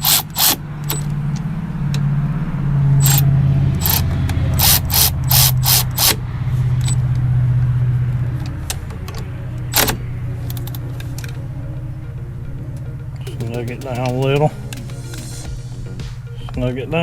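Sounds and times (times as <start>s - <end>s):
sharp metallic tool clicks: 0.0s - 1.1s, 3.8s - 6.2s, 13.3s - 15.4s
low mechanical hum: 0.0s - 17.0s.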